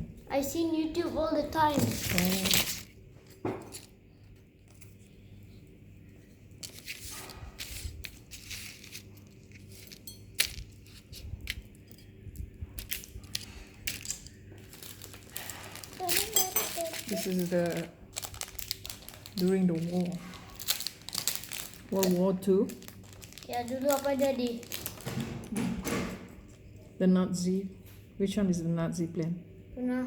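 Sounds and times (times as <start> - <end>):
plastic packaging rustling: 1.6 - 3.0, 6.5 - 11.8, 12.8 - 25.6.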